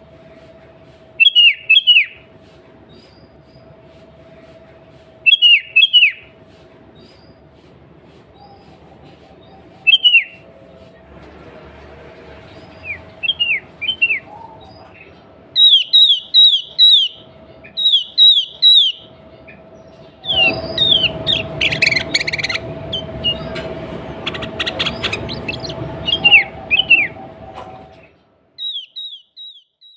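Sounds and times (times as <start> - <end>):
bird whistled notes: 1.2 - 2.2, 5.2 - 6.3, 9.6 - 10.4, 12.8 - 14.9, 15.6 - 19.1, 20.2 - 23.6, 24.2 - 27.2, 28.6 - 29.9
steady low hum: 16.2 - 28.5.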